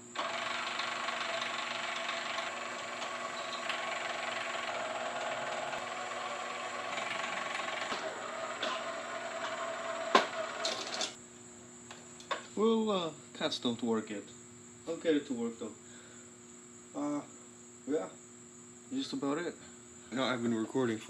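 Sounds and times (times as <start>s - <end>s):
small motor whirring: 0.0s - 11.2s.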